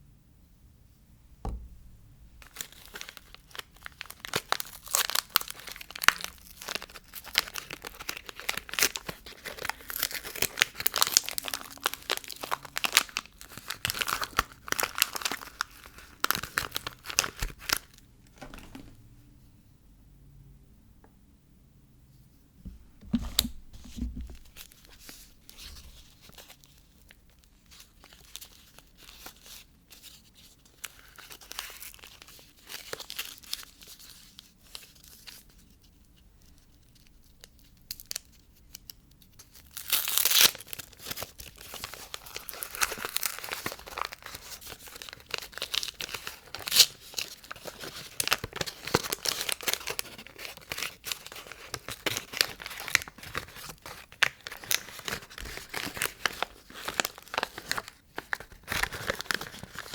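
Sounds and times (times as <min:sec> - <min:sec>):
wrapper tearing: 0:02.4 - 0:18.7, 0:27.7 - 0:35.5, 0:36.5 - 0:59.9
wrapper crinkling: 0:02.4 - 0:18.9, 0:24.3 - 0:35.5, 0:36.5 - 0:59.9
packaging rustling and clicking: 0:02.4 - 0:19.0, 0:40.0 - 0:59.9.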